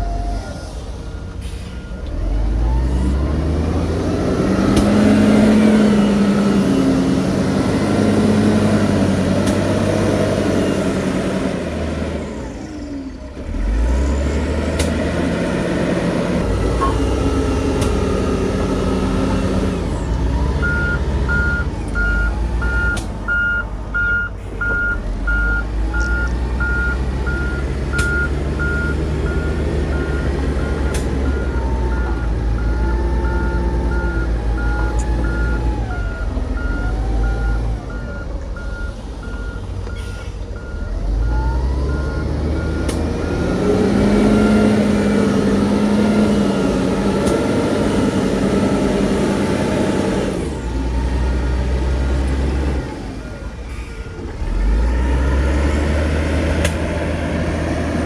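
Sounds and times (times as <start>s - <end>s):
diesel engines revving under load: 0.0s - 58.0s
reversing alarm beeping: 16.7s - 47.0s.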